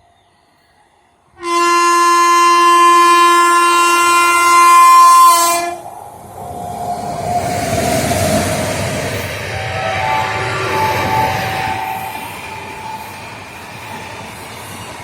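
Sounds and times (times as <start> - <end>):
locomotive horn blast: 1.4 - 5.9, 9.5 - 13.0
rush of noise: 5.8 - 14.2.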